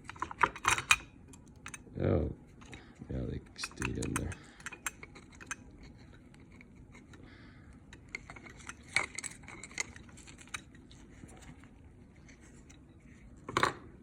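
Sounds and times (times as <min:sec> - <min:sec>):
small metal and plastic parts clicking: 0:03.6 - 0:06.6.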